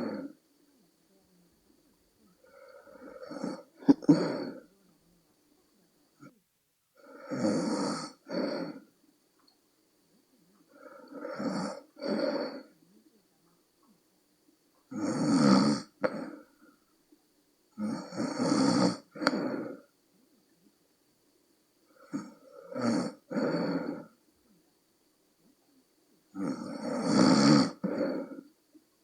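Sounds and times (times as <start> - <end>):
person snoring: 0.0 - 0.4, 2.4 - 4.6, 7.0 - 8.9, 10.7 - 12.7, 14.9 - 16.5, 17.8 - 19.9, 21.9 - 24.2, 26.4 - 28.5.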